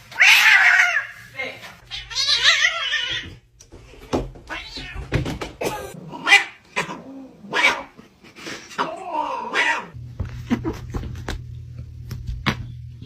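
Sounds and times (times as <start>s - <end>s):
cat meowing: 1.9s - 3.3s, 4.5s - 5.1s.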